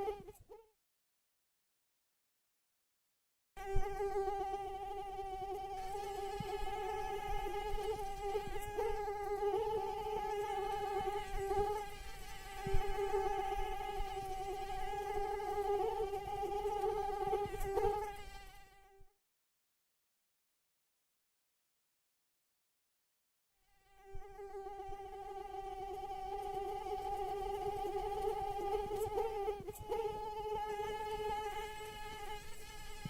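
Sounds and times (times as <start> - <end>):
mosquito whine: 3.6 - 19.0, 23.6 - 33.0.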